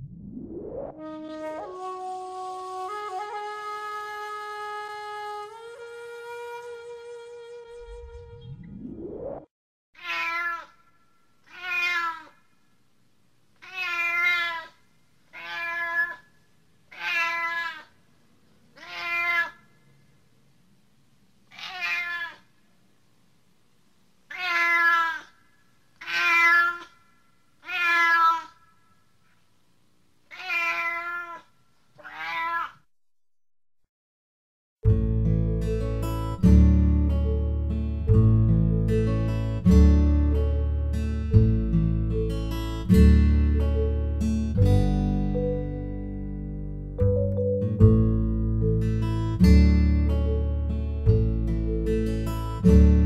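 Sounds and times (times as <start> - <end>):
cat meowing: 10.0 - 10.8, 11.5 - 12.4, 13.6 - 16.3, 16.9 - 17.9, 18.8 - 19.6, 21.5 - 22.5, 24.3 - 25.4, 26.0 - 27.0, 27.6 - 28.6, 30.3 - 32.8.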